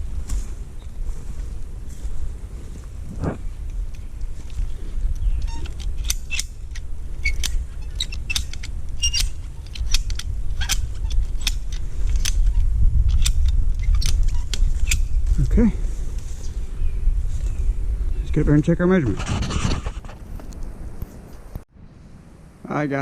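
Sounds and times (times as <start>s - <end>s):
wind rumble on microphone: 0.0s - 22.7s
ratchet strap metal clicks: 5.1s - 15.2s.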